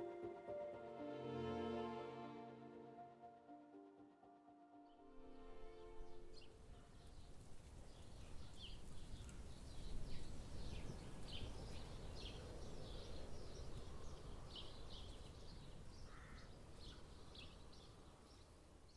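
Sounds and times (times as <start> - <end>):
small birds chirping: 6.0 - 18.9.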